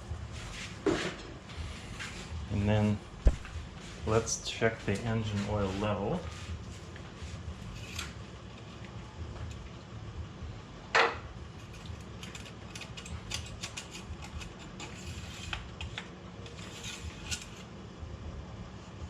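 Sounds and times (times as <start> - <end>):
low steady hum: 0.0 - 19.0
dipstick scrape: 11.6 - 17.7.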